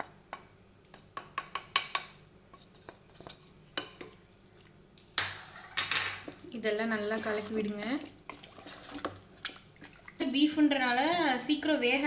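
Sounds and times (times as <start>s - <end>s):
metal spoon clinking on pot: 5.2s - 6.4s.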